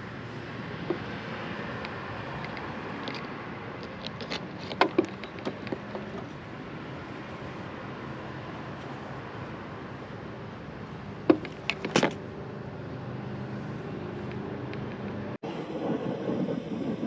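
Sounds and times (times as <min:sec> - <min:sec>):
small tools clicking and tapping: 0:01.8 - 0:06.4, 0:11.3 - 0:12.2.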